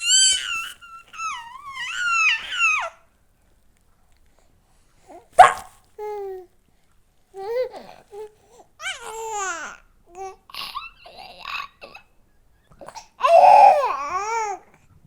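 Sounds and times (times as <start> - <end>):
dog whining and yowling: 0.0 - 2.9, 5.4 - 5.8.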